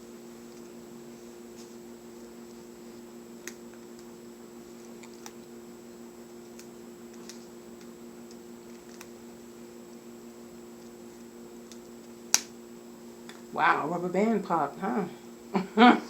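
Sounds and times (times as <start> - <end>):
steady low hum: 0.0 - 16.0
light clicks and snaps: 3.4 - 4.1, 6.5 - 9.1, 11.6 - 12.5.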